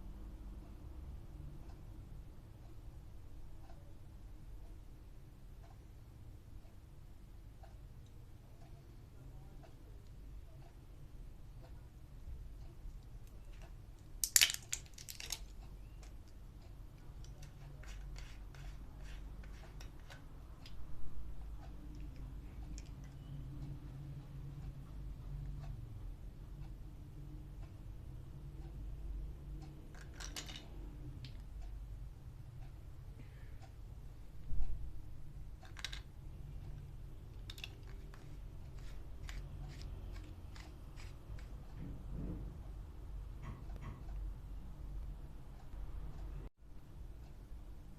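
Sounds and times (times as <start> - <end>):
plastic clicks and rustles: 13.4 - 16.4, 29.9 - 31.4, 35.6 - 36.1, 37.3 - 41.6.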